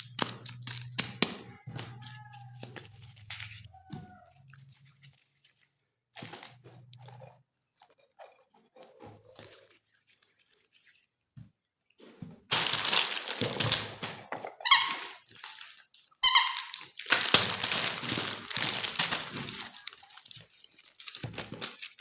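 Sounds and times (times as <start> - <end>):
packaging crinkling and rustling: 0.0 - 6.9, 12.4 - 22.0
short loud squeaks: 14.5 - 15.2, 16.2 - 16.8.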